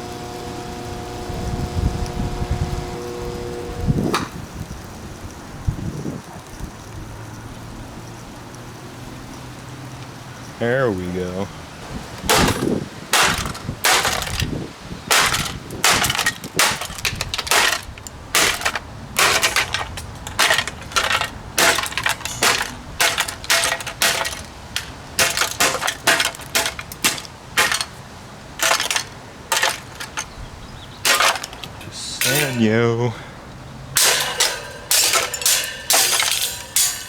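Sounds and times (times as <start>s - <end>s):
fan being smashed: 12.2s - 30.4s, 31.0s - 32.8s, 33.9s - 37.0s.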